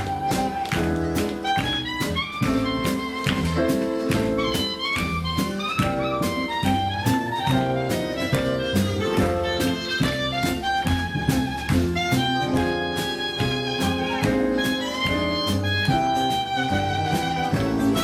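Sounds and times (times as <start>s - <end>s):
instrumental music with steady beat: 0.0s - 18.0s.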